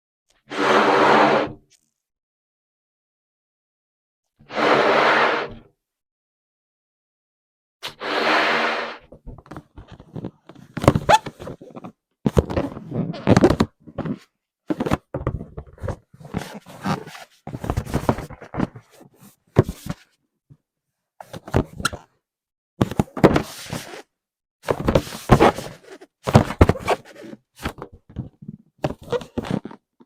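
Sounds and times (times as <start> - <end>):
rubber balloons squeaking: 9.5 - 14.3, 25.3 - 27.5, 29.0 - 30.0.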